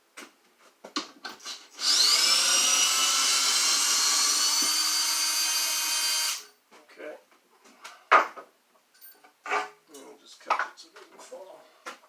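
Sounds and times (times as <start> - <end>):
power drill motor whining: 1.4 - 6.5.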